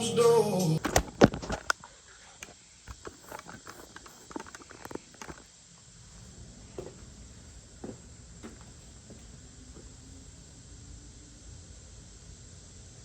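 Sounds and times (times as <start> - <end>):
low hiss: 0.0 - 13.0
faint clicks and knocks: 0.8 - 5.5.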